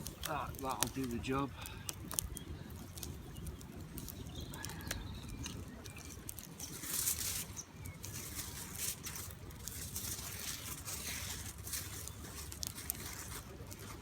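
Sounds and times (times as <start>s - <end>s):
small clicks and crackles: 0.0s - 14.0s
wind buffeting microphone: 0.0s - 14.0s
faint bird calls: 0.3s - 6.2s.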